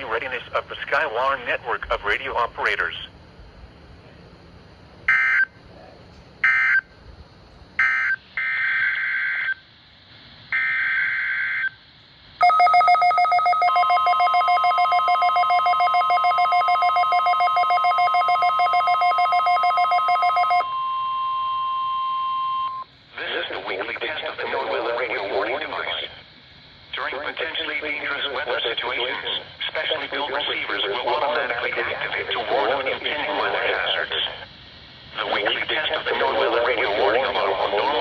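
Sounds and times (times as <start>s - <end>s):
steady warning alarm tone: 5.0s - 5.6s, 6.4s - 6.9s, 7.8s - 9.7s, 10.5s - 11.8s, 12.4s - 22.9s
loud pulsing alarm: 5.1s - 5.6s, 6.4s - 6.9s, 7.8s - 9.7s, 10.5s - 11.8s, 12.4s - 22.9s.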